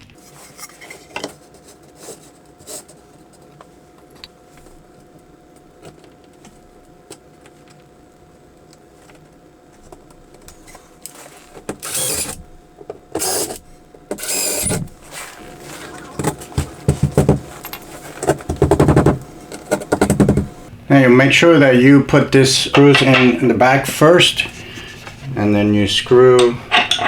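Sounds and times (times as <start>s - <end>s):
cordless drill running: 0.2s - 20.7s
screws clicking and rattling: 10.5s - 12.4s, 13.1s - 14.8s.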